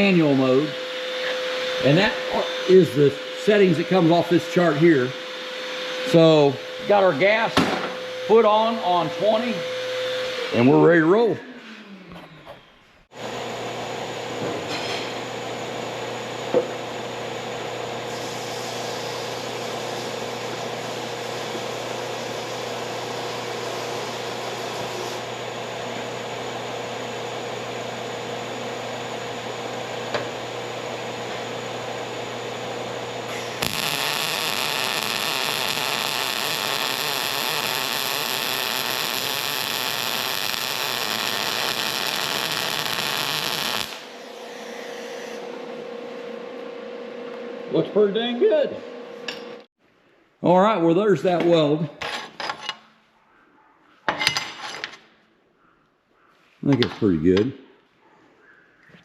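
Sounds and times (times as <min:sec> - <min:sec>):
welding arc crackling hiss: 0:18.0 - 0:26.1, 0:33.2 - 0:44.3.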